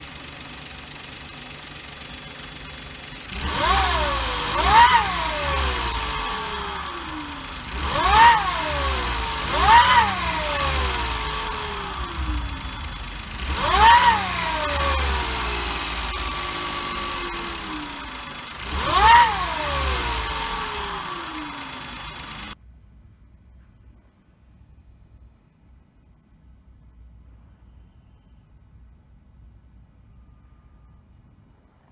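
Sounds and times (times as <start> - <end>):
car engine idling and revving: 0.0 - 22.6
turbo whine: 0.0 - 22.6.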